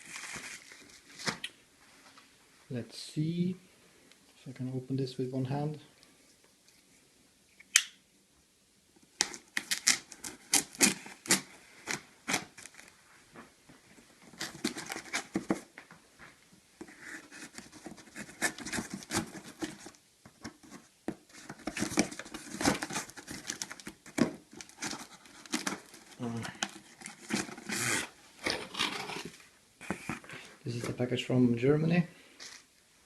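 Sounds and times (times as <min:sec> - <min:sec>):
packaging scratching and ripping: 0:09.2 - 0:12.9, 0:21.6 - 0:29.4.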